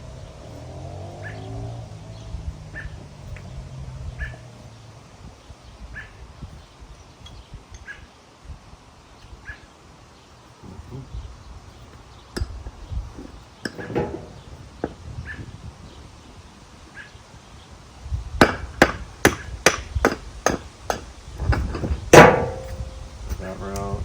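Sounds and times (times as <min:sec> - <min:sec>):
metal parts knocking: 0:20.0 - 0:23.0.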